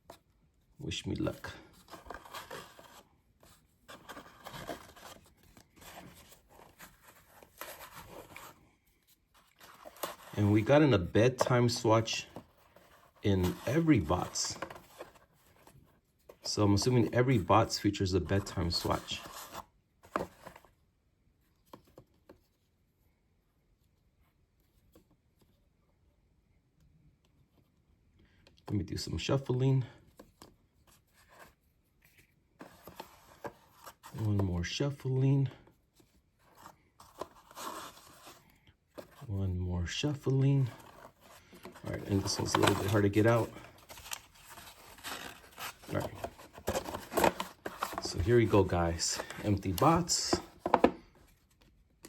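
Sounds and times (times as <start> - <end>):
cardboard box rustling and scraping: 1.6 - 8.6, 9.2 - 15.8, 36.4 - 39.3, 40.4 - 51.1.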